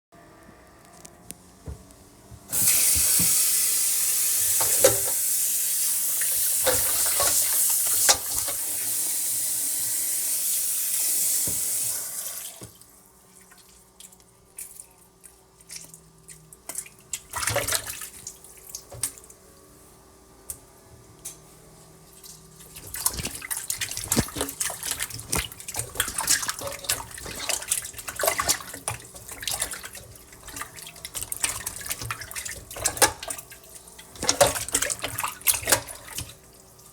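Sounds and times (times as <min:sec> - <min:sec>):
splashing and knocking in sink: 0:02.5 - 0:03.5, 0:04.4 - 0:05.2, 0:06.2 - 0:08.9, 0:11.3 - 0:12.8, 0:15.6 - 0:19.2, 0:22.2 - 0:36.5
tap water running into sink: 0:02.5 - 0:12.8, 0:22.8 - 0:36.4.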